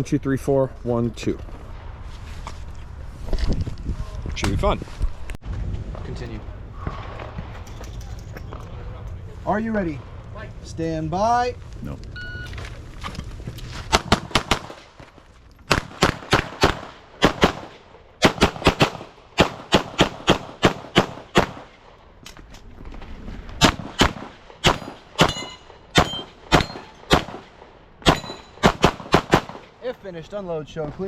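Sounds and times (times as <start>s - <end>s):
pistol shots: 13.9s - 14.9s, 15.7s - 21.8s, 23.6s - 29.7s.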